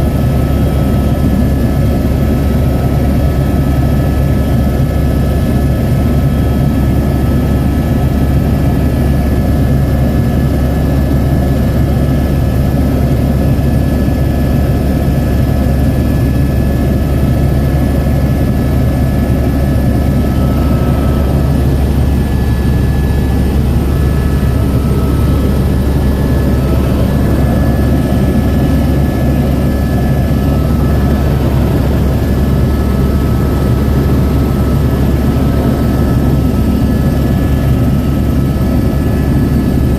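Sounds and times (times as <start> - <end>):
helicopter engine and rotor drone: 0.0 - 39.9
faint whine: 14.8 - 39.9.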